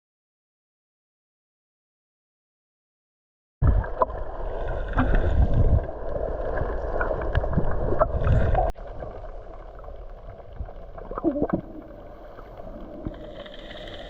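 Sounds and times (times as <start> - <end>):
water washing and gurgling: 3.6 - 14.0.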